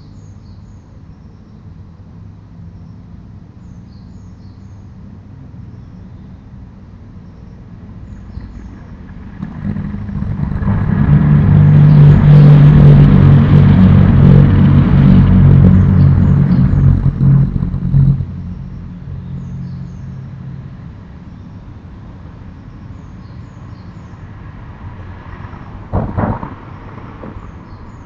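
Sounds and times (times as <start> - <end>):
vehicle engine humming: 6.5 - 28.0
knocks: 25.9 - 27.6.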